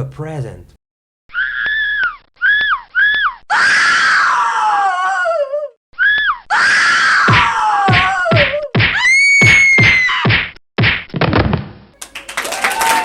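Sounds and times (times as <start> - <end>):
comic squeaks and squeals: 1.3 - 4.5.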